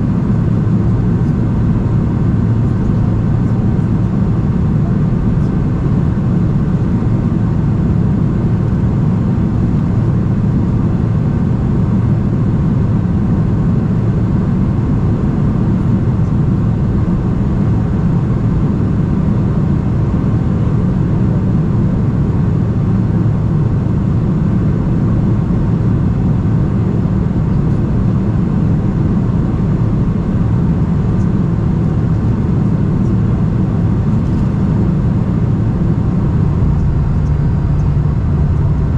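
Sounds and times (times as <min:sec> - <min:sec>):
airplane cabin engine rumble: 0:00.0 - 0:38.9.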